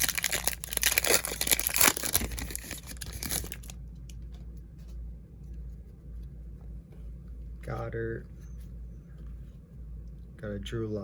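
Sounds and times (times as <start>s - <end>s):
plastic wrapper crackling: 0.0s - 3.8s.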